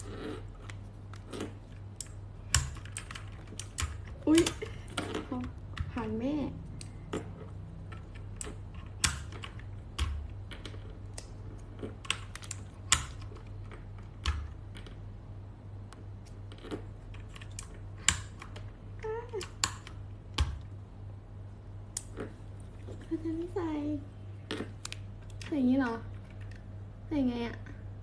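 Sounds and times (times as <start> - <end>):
keyboard keycaps clicking: 2.0 - 6.0, 6.8 - 15.0.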